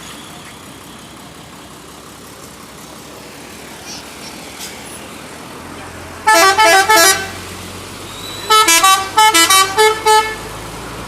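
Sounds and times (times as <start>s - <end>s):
low engine hum: 0.0s - 11.0s
musical air horn tunes: 8.5s - 10.4s.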